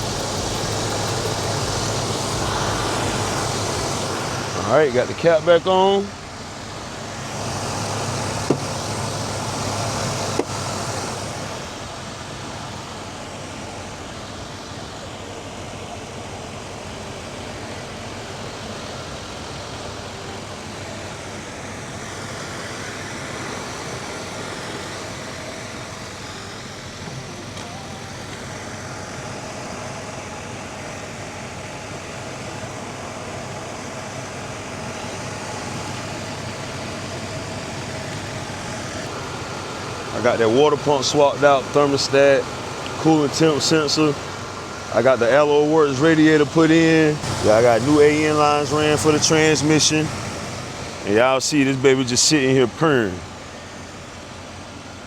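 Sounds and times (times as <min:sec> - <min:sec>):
car engine idling: 0:00.0 - 0:55.0
rushing noise: 0:00.0 - 0:55.0.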